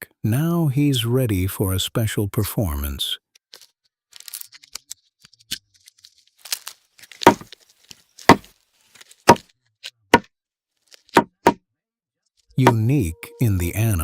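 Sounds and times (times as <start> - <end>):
stick knocking on hollow trunk: 7.2 - 7.5, 8.3 - 8.5, 11.2 - 11.6, 12.6 - 12.9.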